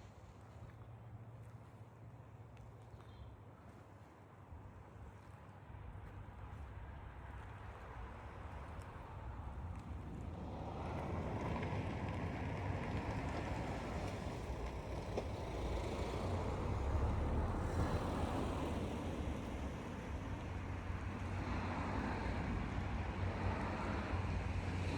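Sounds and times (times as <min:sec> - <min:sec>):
car running with road noise: 0:09.5 - 0:24.9.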